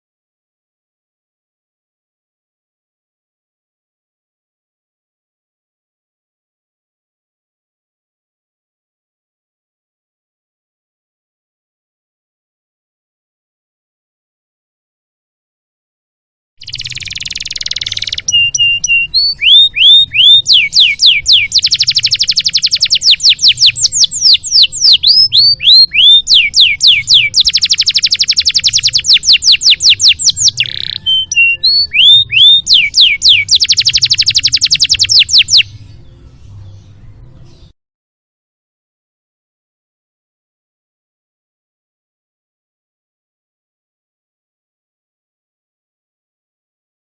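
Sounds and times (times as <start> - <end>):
canary singing trills and whistles: 16.6 - 37.7.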